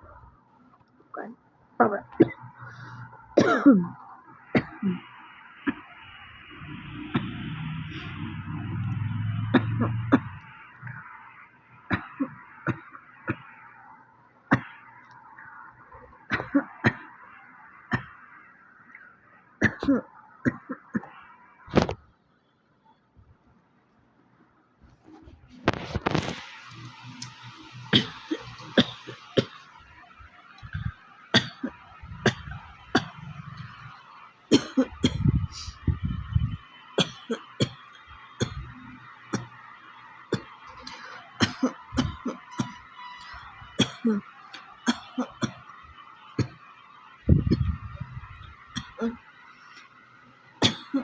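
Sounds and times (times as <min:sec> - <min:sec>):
low hum: 0:02.1 - 0:13.4, 0:25.2 - 0:44.2, 0:47.2 - 0:49.2
person coughing: 0:03.4 - 0:04.0, 0:04.6 - 0:05.0, 0:16.3 - 0:17.0, 0:19.6 - 0:21.1, 0:27.9 - 0:29.6, 0:31.4 - 0:33.2, 0:34.5 - 0:35.7, 0:37.0 - 0:37.8, 0:41.4 - 0:42.8, 0:43.8 - 0:44.2, 0:44.9 - 0:45.6, 0:48.8 - 0:49.2, 0:50.6 - 0:51.0.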